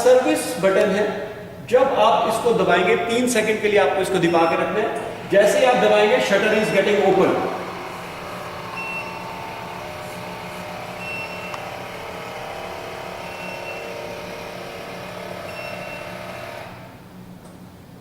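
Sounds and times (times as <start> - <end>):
shutter motor running: 5.1 - 17.4.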